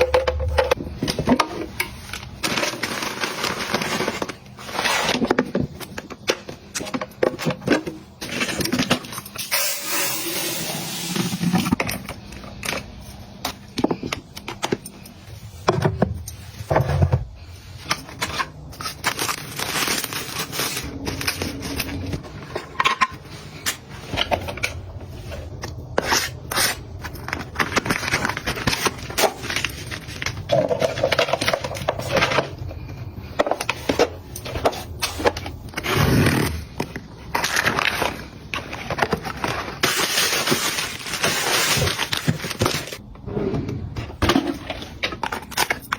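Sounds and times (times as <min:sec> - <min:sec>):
household items clicking and knocking: 0:00.0 - 0:09.6
packaging rustling: 0:02.0 - 0:06.8, 0:17.4 - 0:22.6, 0:23.3 - 0:32.7, 0:33.6 - 0:43.0.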